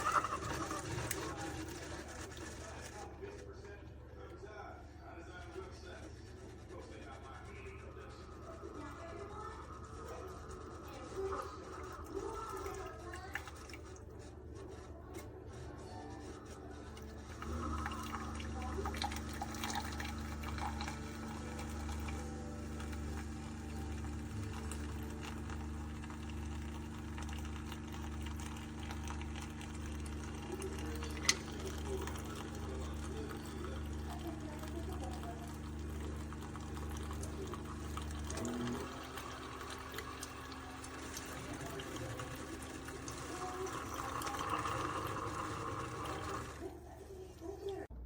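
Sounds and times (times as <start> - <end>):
hot liquid pouring into a cup: 0.0 - 3.4, 5.5 - 15.2, 16.2 - 46.8
coffee maker pump hum: 0.0 - 47.9
water noise: 16.9 - 46.8.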